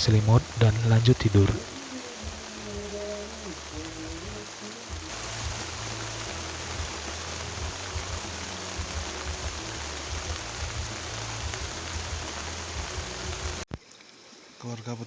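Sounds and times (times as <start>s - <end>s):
irregular low rumble: 0.0s - 13.6s
heavy rain hissing: 0.0s - 13.7s.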